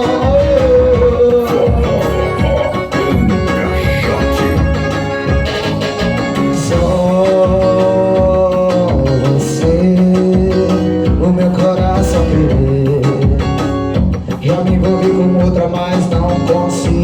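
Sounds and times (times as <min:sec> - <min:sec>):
gliding lead melody: 0:00.0 - 0:08.0
steady bass drum beat: 0:00.0 - 0:17.0.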